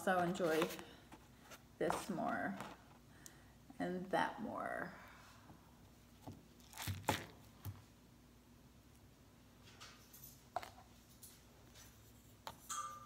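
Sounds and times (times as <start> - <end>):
small objects knocking and rustling: 6.2 - 7.8.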